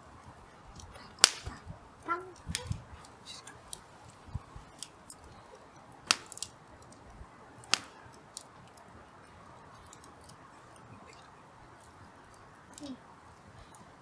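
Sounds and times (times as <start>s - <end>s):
campfire crackling: 0.0s - 14.0s
loud fire pops: 0.7s - 5.2s, 6.0s - 8.6s.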